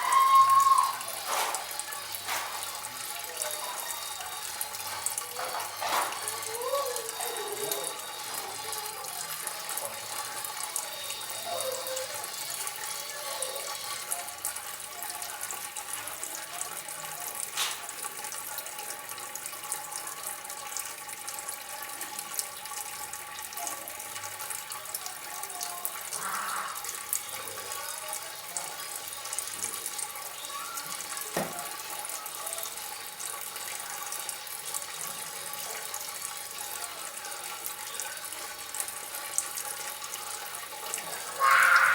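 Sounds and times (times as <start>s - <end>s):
water trickling and splashing: 0.0s - 41.9s.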